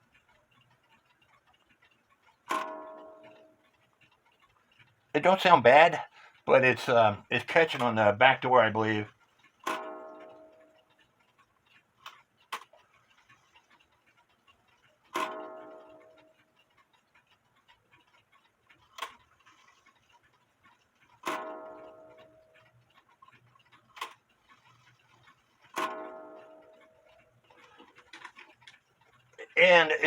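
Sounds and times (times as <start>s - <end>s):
clock movement clicks: 0.0s - 30.0s
wall clock striking: 2.4s - 3.7s, 5.2s - 10.9s, 14.9s - 17.0s, 20.8s - 28.8s.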